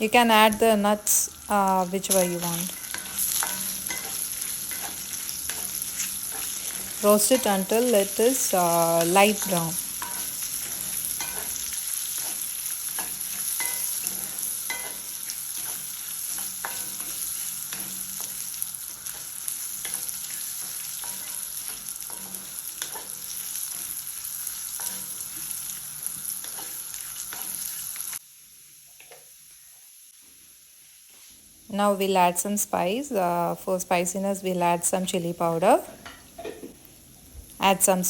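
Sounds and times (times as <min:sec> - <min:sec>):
oil sizzling in a pan: 0:00.0 - 0:38.0
spatula scraping and knocking pan: 0:02.7 - 0:08.1, 0:09.0 - 0:24.0.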